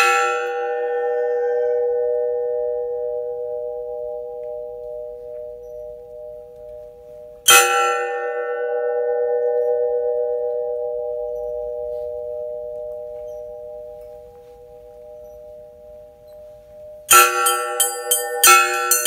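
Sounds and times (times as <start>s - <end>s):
gas cylinder bell ringing: 8.7s - 19.0s.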